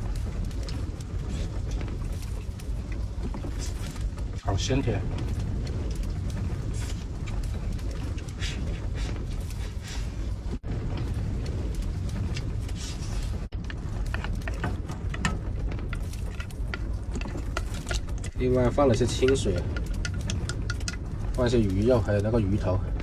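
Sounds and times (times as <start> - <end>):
strong wind buffeting van: 0.0 - 23.0.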